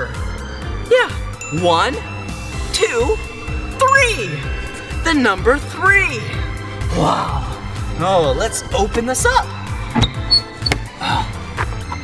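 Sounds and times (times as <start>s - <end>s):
background music: 0.0s - 12.0s
door latch click: 10.6s - 10.9s.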